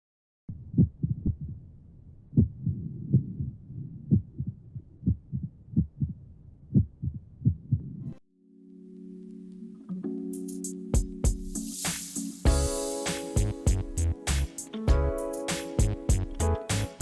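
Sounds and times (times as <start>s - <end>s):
heartbeat thuds: 11.0s - 11.6s, 13.4s - 14.0s, 14.9s - 15.2s, 15.8s - 16.4s.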